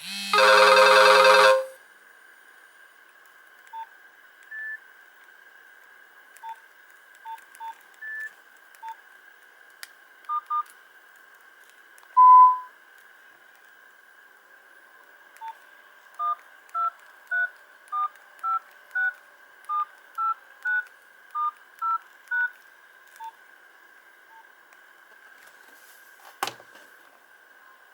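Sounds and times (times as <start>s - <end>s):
faint steady whine: 0.0s - 7.2s
phone keypad beeps: 0.1s - 1.7s, 12.2s - 12.7s
touch-tone dialing beeps: 0.1s - 1.7s, 12.2s - 12.7s.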